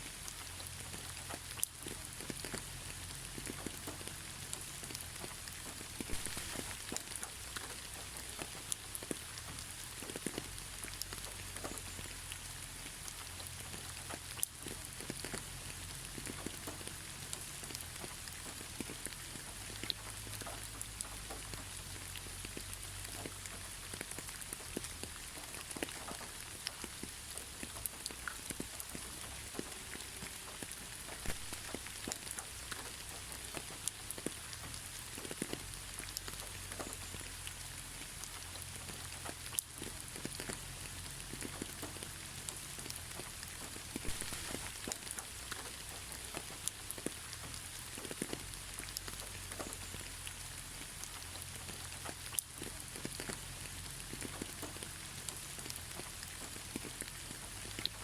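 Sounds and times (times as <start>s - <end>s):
gentle rain hiss: 0.0s - 58.0s
raindrops tapping: 0.0s - 58.0s.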